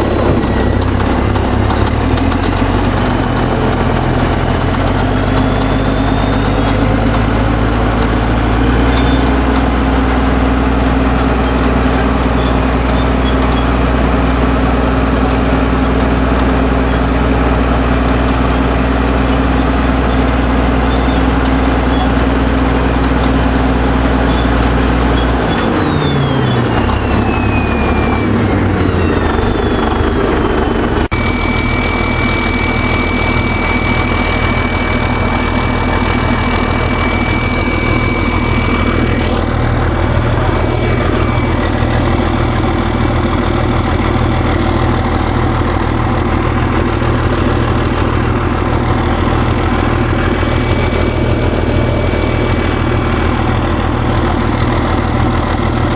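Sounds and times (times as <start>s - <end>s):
bulldozer diesel engine running: 0.0s - 55.9s
high whine: 0.0s - 55.9s.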